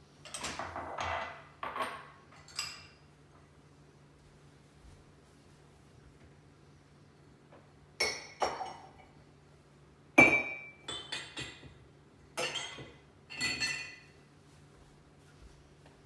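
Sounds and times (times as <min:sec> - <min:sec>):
dishes and glassware clinking: 0:00.3 - 0:03.1, 0:08.0 - 0:09.1, 0:10.2 - 0:11.8, 0:12.4 - 0:14.2.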